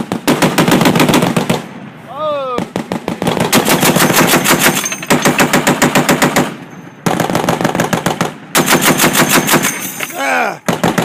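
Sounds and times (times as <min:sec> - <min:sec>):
heavy machine gun bursts: 0:03.3 - 0:11.0.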